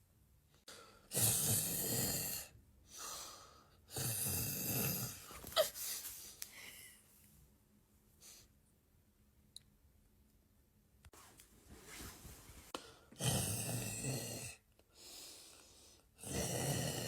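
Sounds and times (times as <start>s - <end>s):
person snoring loudly: 1.1s - 2.6s, 3.9s - 5.3s, 13.2s - 14.6s, 16.2s - 17.0s.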